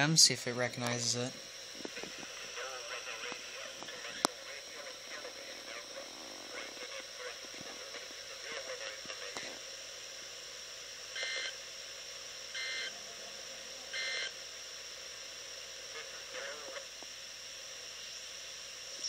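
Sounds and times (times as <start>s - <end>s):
digital data squawk: 12.6s - 13.0s, 13.9s - 14.4s.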